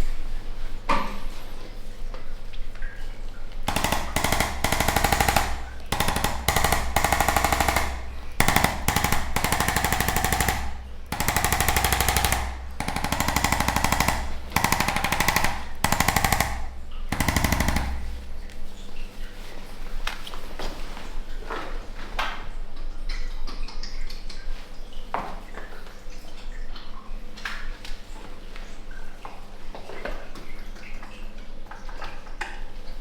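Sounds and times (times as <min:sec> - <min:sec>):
percussion massager hammering buzz: 0:03.7 - 0:18.5.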